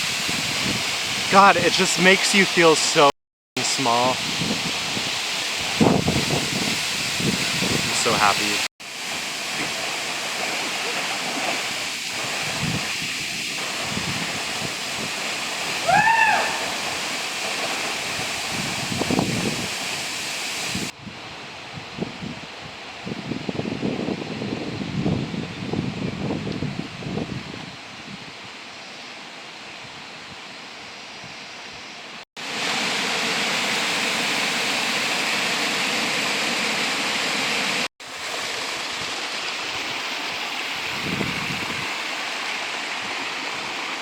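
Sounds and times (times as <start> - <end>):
waterfall rushing: 0.0 - 20.9, 32.4 - 44.0
rising-and-falling call: 15.8 - 17.2.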